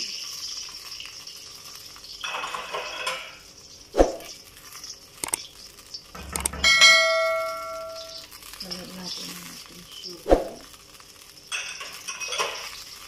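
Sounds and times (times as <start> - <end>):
metallic clang ringing: 6.2 - 8.2
utensils knocking and clinking: 6.2 - 8.2, 11.5 - 12.7.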